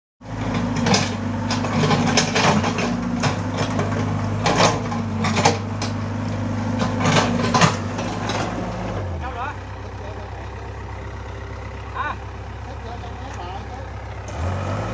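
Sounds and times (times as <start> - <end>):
heavy machine engine running: 0.2 - 14.9
metallic clanks and knocks: 0.4 - 6.0, 6.6 - 8.9.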